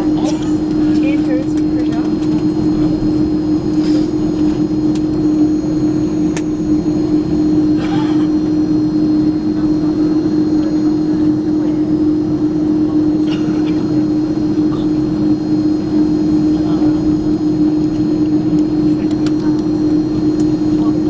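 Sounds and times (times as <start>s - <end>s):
air-conditioning hum: 0.0s - 21.0s
constant low droning tone: 0.0s - 21.0s
engines idling hum: 0.0s - 21.0s.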